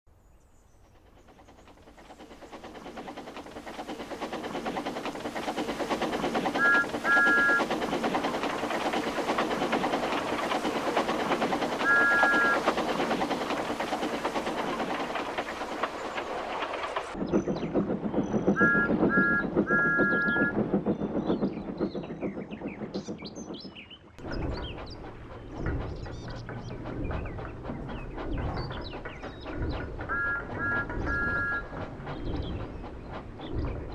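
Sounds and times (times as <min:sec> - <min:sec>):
steam locomotive chuffing: 0:00.6 - 0:33.9.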